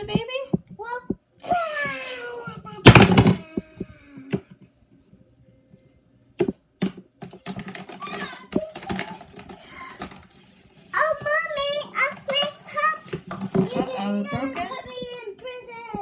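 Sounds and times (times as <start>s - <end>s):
plastic toys knocking on table: 2.8s - 3.5s, 6.4s - 10.2s, 12.1s - 14.8s.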